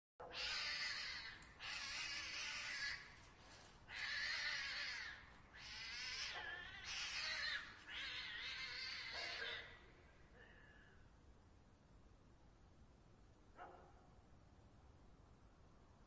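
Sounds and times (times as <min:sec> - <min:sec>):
cats yowling in a fight: 0:00.2 - 0:03.2, 0:03.8 - 0:09.8.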